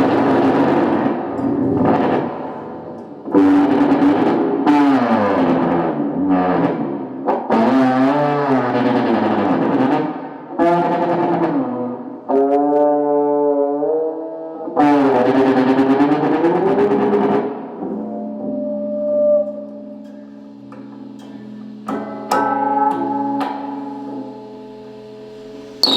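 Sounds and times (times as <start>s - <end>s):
electric guitar feedback howling: 0.0s - 6.9s, 12.8s - 25.9s.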